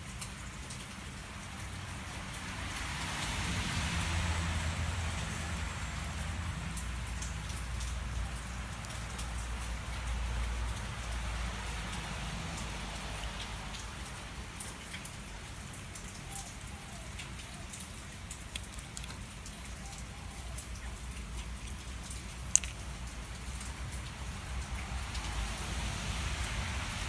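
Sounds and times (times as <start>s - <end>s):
faint ticks: 17.1s - 24.1s.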